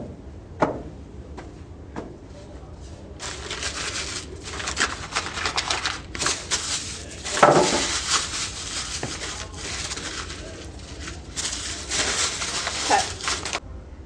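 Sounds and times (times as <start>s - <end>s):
paper being crumpled: 3.2s - 13.6s.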